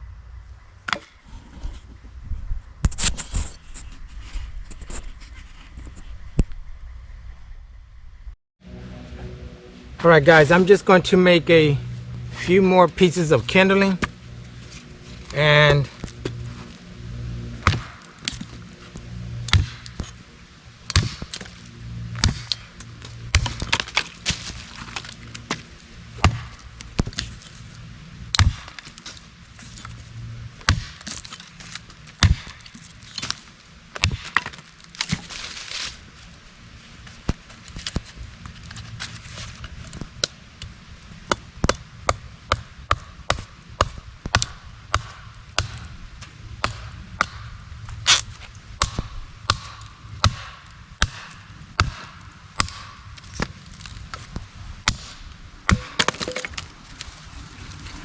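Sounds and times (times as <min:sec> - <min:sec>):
knife chopping wood: 0:17.6 - 0:18.5, 0:19.5 - 0:20.1, 0:20.9 - 0:21.4, 0:22.2 - 0:22.6, 0:23.3 - 0:25.6, 0:26.2 - 0:27.3, 0:28.3 - 0:28.9, 0:30.6 - 0:33.4, 0:34.0 - 0:35.3, 0:41.3 - 0:45.9, 0:48.8 - 0:53.5, 0:54.1 - 0:56.5.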